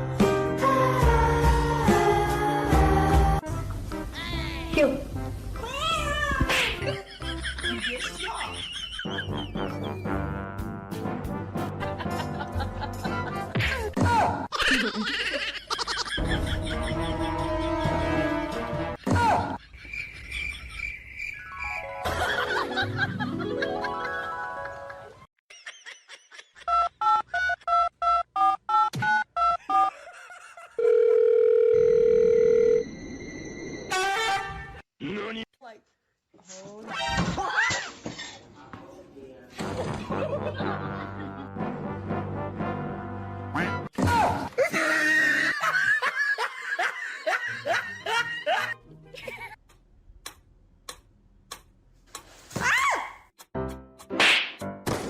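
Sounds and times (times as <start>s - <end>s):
background music: 0.0s - 14.5s, 16.2s - 19.4s, 39.9s - 44.3s
person laughing: 6.5s - 10.0s, 11.8s - 18.0s, 29.3s - 30.8s, 40.1s - 41.6s, 44.5s - 49.6s
loud steady phone tone: 30.8s - 33.0s.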